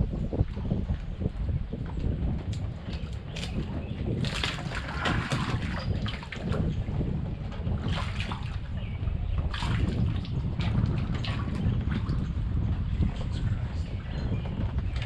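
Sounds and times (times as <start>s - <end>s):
wind buffeting microphone: 0.0s - 15.0s
water splashing: 3.3s - 6.6s.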